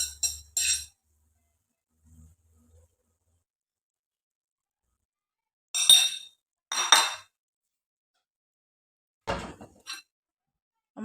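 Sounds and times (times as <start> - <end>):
metal utensil clinking on pot: 0.0 - 0.9, 5.8 - 7.2.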